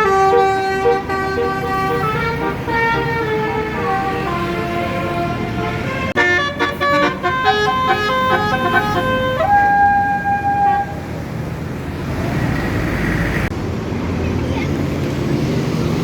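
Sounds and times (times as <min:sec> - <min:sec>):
musical bus horn melody: 0:00.0 - 0:11.2
engine and traffic noise: 0:00.0 - 0:16.0.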